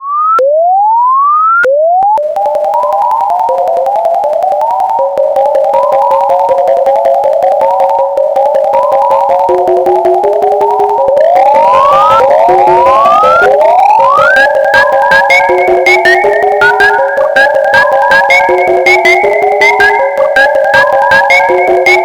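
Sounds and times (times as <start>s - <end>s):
fast electronic beeps: 2.4s - 22.0s
rapid clicking: 2.4s - 22.0s
rising siren-like alarm sweep: 4.7s - 22.0s.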